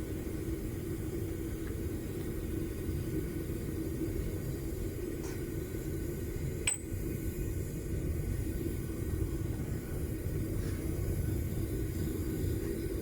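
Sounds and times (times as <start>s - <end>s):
propane burner rushing: 0.0s - 13.0s
sharp metallic clink: 6.7s - 7.0s.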